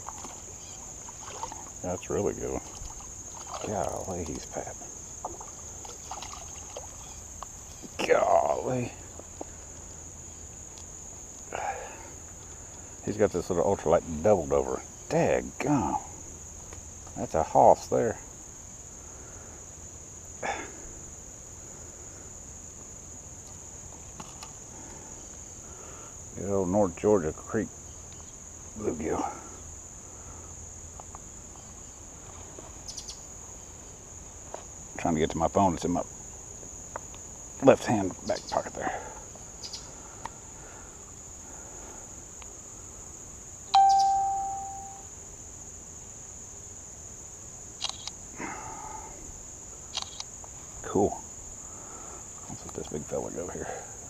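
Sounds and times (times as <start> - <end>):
insect chorus buzzing: 0.0 - 54.0
smartphone electronic chime: 43.7 - 45.0
faint clicks: 47.8 - 48.2, 49.9 - 50.6.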